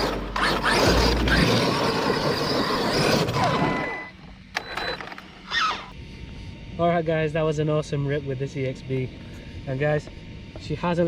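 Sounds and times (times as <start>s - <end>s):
rc truck motor whining: 0.0s - 6.0s
tyre and drivetrain noise: 0.0s - 6.0s.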